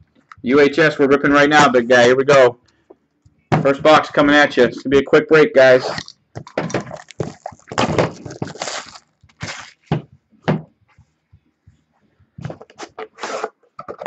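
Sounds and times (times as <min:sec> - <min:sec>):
wrapping crackling: 0:06.4 - 0:09.9.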